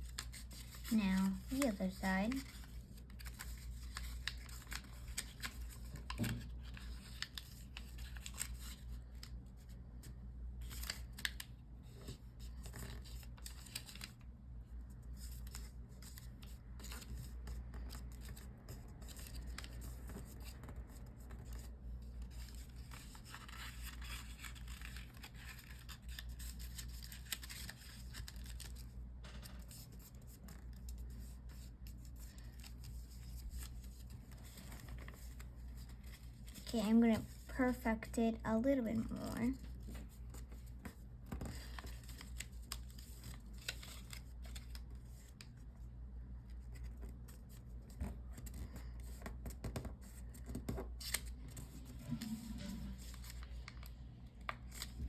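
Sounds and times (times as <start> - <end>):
paper rustling and crinkling: 0.0 - 55.0.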